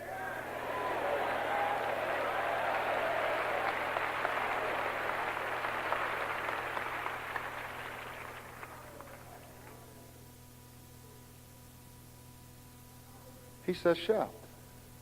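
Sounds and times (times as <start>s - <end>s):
crowd applauding: 0.0s - 9.8s.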